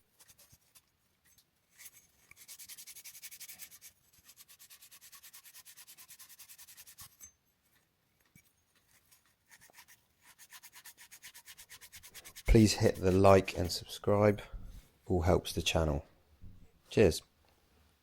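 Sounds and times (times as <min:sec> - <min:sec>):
fast rubbing on copper pipe: 0:01.8 - 0:07.3, 0:08.8 - 0:14.8.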